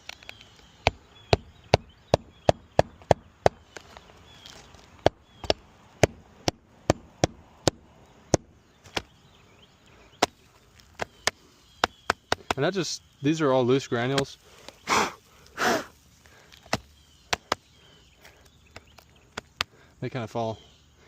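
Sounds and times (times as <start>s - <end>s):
hammer striking nail: 5.4s - 8.5s.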